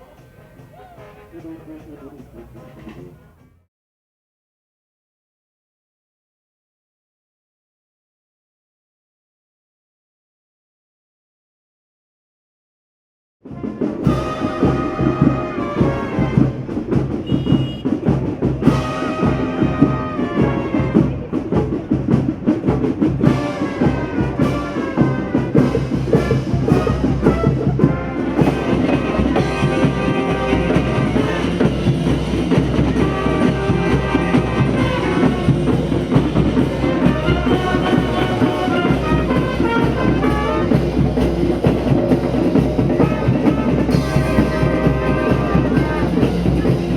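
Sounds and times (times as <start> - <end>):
brass band playing: 0.0 - 3.5, 13.4 - 46.9.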